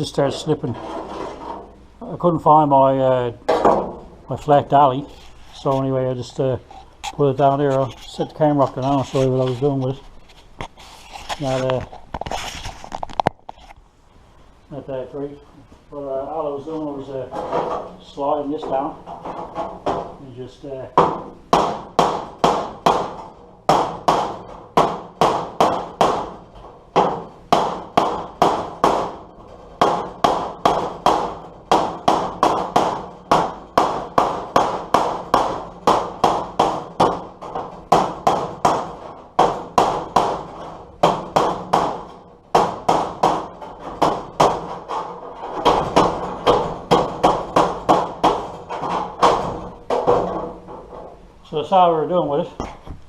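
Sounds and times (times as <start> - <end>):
hammer tapping steel panel: 20.9 - 51.2.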